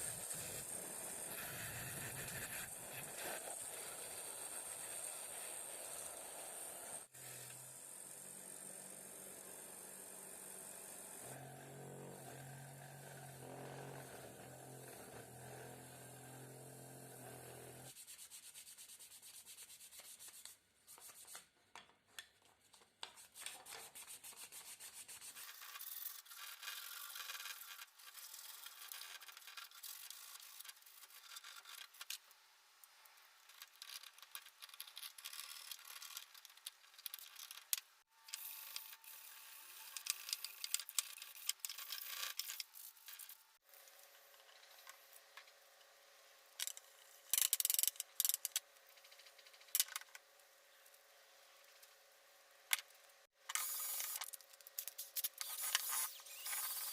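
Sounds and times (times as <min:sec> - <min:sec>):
hand sanding and filing: 0:17.8 - 0:21.4, 0:23.2 - 0:31.6.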